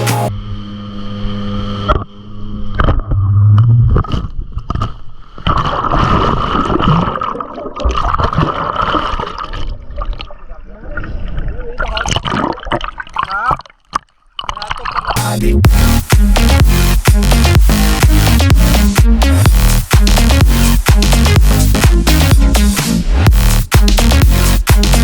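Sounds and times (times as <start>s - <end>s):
water splashing and gurgling: 3.9s - 15.2s.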